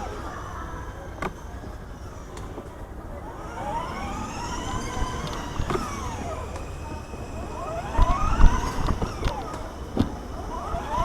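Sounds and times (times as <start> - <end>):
car engine and tyres rumbling: 0.0 - 11.0
siren wailing: 3.2 - 9.8.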